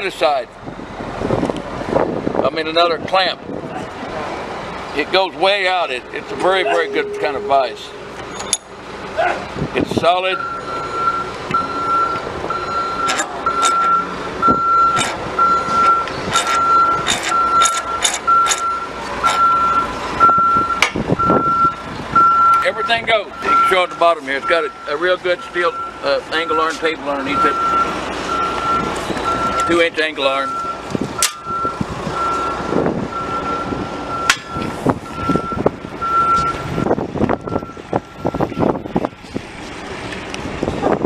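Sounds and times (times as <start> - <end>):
vehicle backup alarm beeping: 5.8 - 8.9, 10.0 - 39.2.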